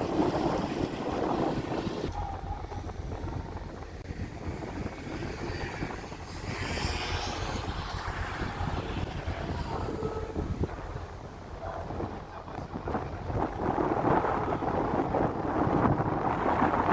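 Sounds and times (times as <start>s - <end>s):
ferry engines rumbling: 0.0s - 16.9s
wind noise on microphone: 0.0s - 16.9s.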